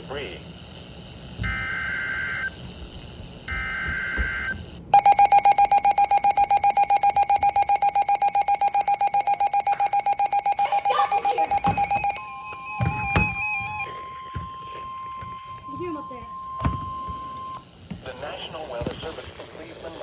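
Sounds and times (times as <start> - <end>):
rapid electronic alert beeping: 5.0 - 12.2
screeching digital data bursts: 5.0 - 12.2.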